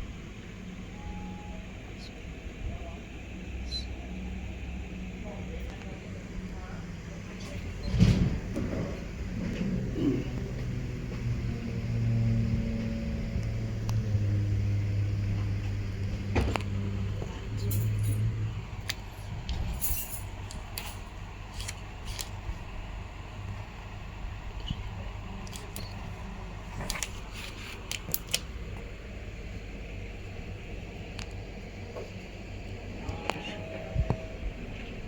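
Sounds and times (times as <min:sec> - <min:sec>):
low steady hum: 0:00.0 - 0:35.0.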